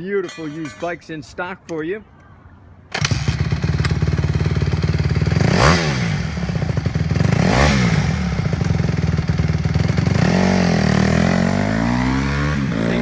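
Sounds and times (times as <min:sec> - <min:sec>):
motorcycle engine fast idle: 0:03.0 - 0:05.4.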